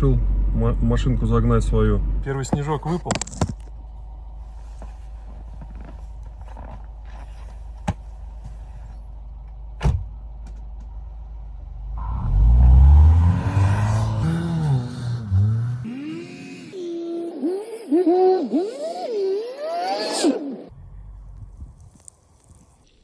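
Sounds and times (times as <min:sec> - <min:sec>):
car engine revving: 0:10.8 - 0:22.0.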